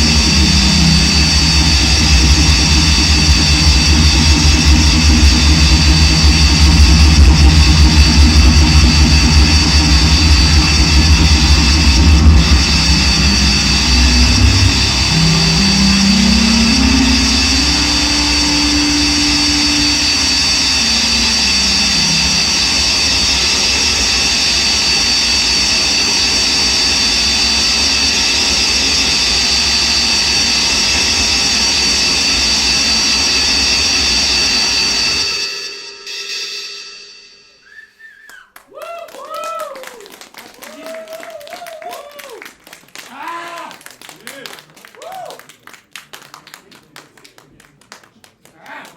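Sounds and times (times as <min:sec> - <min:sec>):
electronic drone noise music: 0:00.0 - 0:37.5
heavy bass: 0:00.0 - 0:37.6
high whistling tones: 0:00.0 - 0:42.4.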